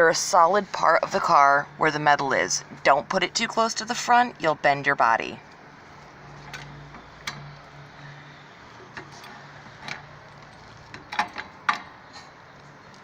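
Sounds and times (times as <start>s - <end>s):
car jack metal clicks and clanks: 6.3s - 7.8s, 8.7s - 12.3s.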